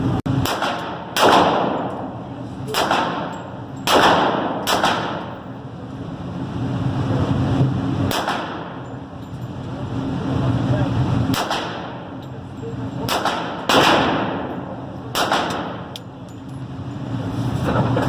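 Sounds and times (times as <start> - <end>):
gunshots: 0.4 - 1.9, 2.7 - 5.3, 8.1 - 8.8, 11.3 - 12.0, 13.1 - 15.9.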